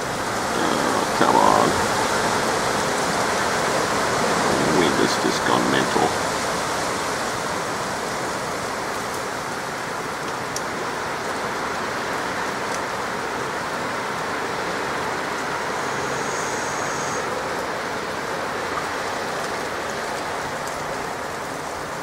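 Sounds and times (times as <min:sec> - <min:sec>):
strong gusty wind: 0:00.0 - 0:16.2.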